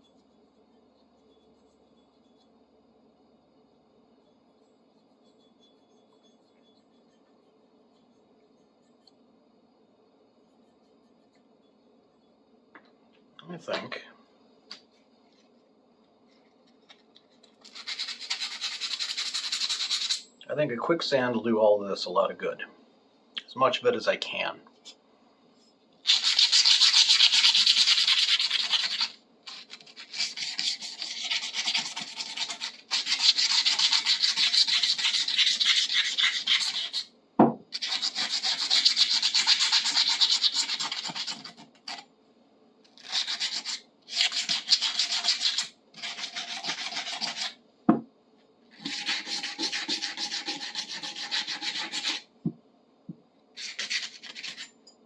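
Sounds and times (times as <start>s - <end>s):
sandpaper scrubbing metal: 17.6s - 20.2s, 26.0s - 37.0s, 37.8s - 42.0s, 43.0s - 47.6s, 48.7s - 52.3s, 53.6s - 54.7s.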